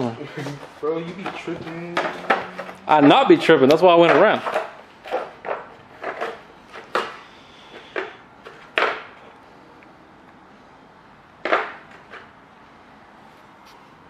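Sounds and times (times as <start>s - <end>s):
hand tools clattering: 0.4s - 7.2s.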